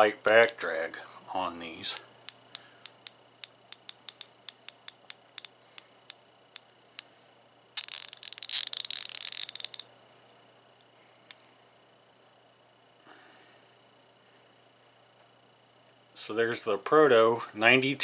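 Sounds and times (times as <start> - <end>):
ratchet clicking: 1.9 - 6.6, 7.8 - 9.9.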